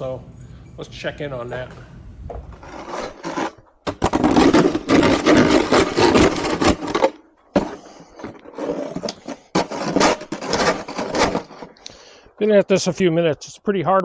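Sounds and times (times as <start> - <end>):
snow shovel scraping frozen snow: 2.6 - 3.6, 4.2 - 7.0, 7.8 - 11.7.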